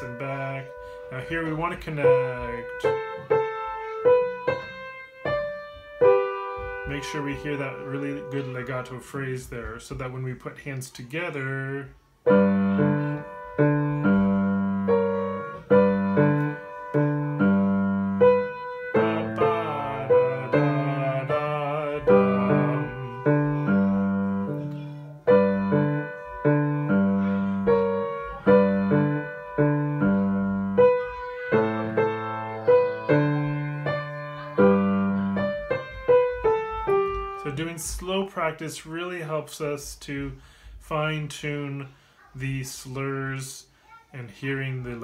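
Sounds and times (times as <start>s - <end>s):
piano playing: 0.0s - 9.4s, 11.6s - 37.9s.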